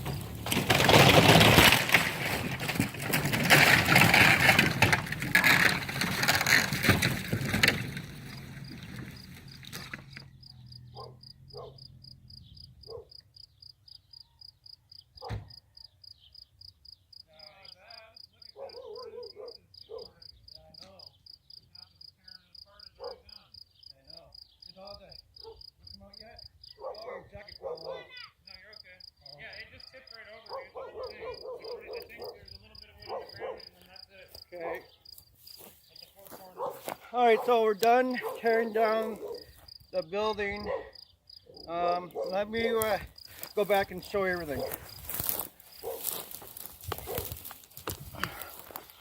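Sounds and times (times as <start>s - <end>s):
wooden shed being torn down: 0.0s - 10.3s, 35.6s - 40.1s, 42.3s - 49.0s
cricket chirping: 7.6s - 37.0s, 37.7s - 49.0s
faint scattered sounds: 28.5s - 40.6s, 41.5s - 49.0s.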